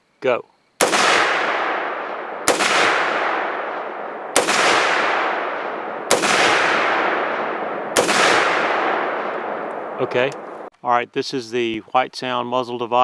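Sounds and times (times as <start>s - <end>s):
rifle shots with long echo: 0.8s - 10.7s.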